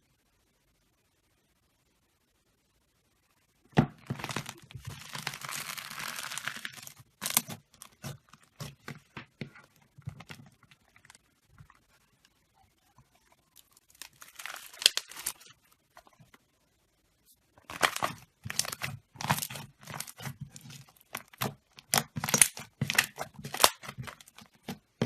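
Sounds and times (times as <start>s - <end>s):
slime crackling and popping: 4.0s - 11.8s, 13.6s - 16.2s, 17.6s - 25.0s.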